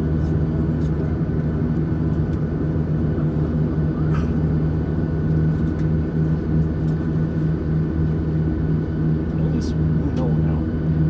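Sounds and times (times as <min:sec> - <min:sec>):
aircraft cabin drone: 0:00.0 - 0:11.0.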